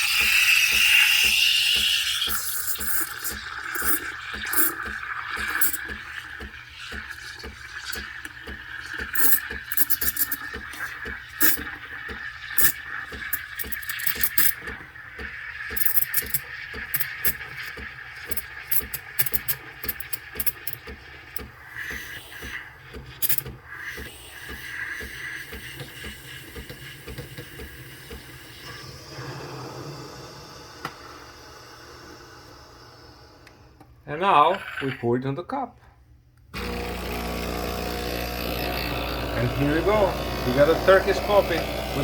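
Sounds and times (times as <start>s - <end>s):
liquid crackling and sputtering: 0.2s - 26.7s.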